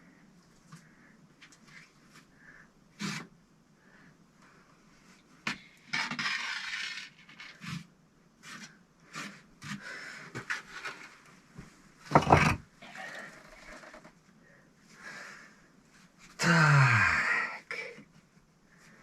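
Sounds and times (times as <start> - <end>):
knocks on bricks: 12.1 - 12.6.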